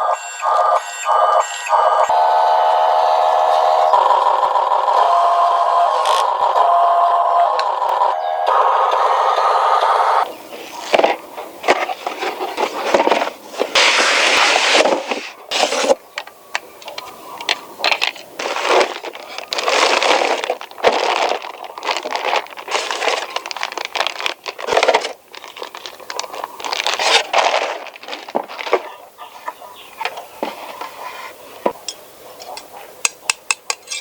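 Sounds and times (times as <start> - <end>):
packaging rustling and crinkling: 10.4 - 31.7.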